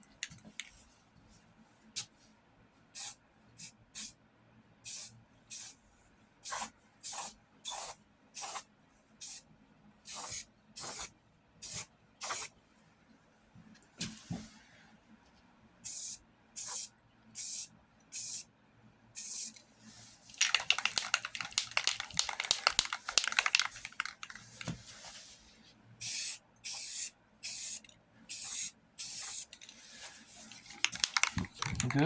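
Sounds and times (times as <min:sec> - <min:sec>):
aerosol can spraying: 0:20.3 - 0:24.7, 0:30.5 - 0:32.0.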